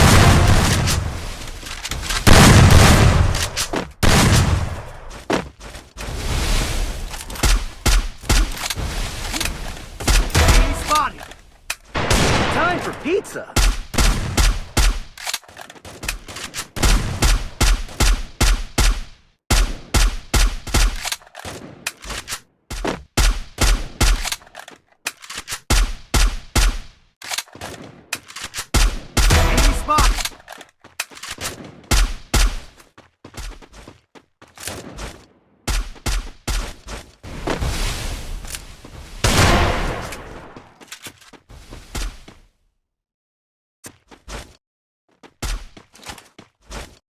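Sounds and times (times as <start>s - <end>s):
gunshot-like bangs with bass boom: 0.0s - 1.0s, 2.3s - 3.4s
continuous rattling blasts: 0.0s - 5.1s, 5.8s - 32.8s.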